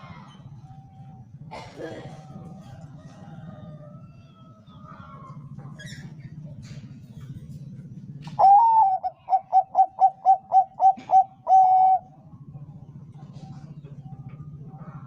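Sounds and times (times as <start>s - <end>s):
dove cooing: 8.2s - 15.0s.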